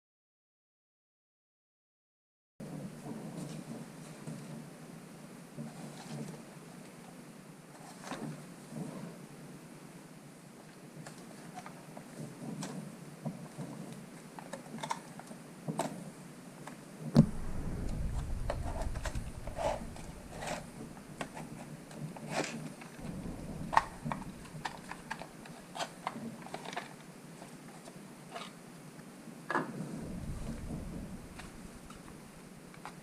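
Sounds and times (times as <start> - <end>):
low rumble: 17.2 - 22.0, 23.0 - 25.8, 29.8 - 32.9.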